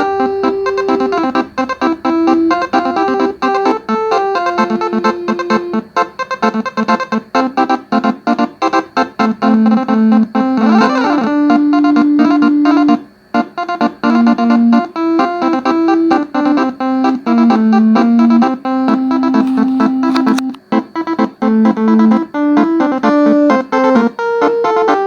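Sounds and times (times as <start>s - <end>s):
bus horns playing melody: 0.0s - 5.9s, 10.5s - 13.0s.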